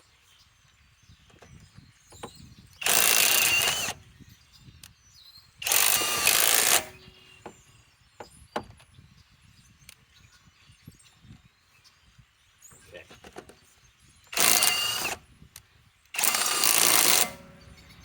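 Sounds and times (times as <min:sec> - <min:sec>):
impact wrench hammering: 0:16.2 - 0:17.6.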